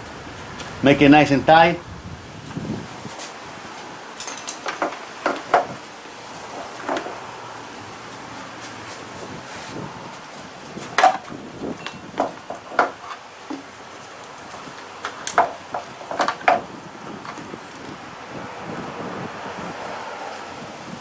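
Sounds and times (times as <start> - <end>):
wind hiss on microphone: 0.0 - 21.0
engine parts knocking and clicking: 4.2 - 5.8, 6.5 - 7.2, 10.8 - 17.9.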